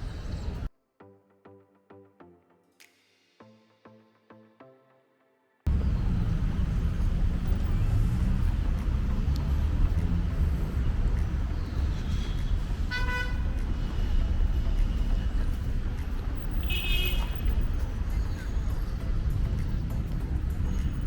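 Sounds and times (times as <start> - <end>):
traffic rumble: 0.0 - 0.7, 5.7 - 21.0
car horn honk: 12.9 - 13.6, 16.6 - 17.6.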